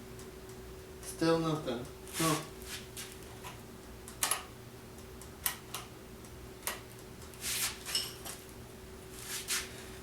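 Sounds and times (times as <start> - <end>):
faint steady hum: 0.0 - 10.0.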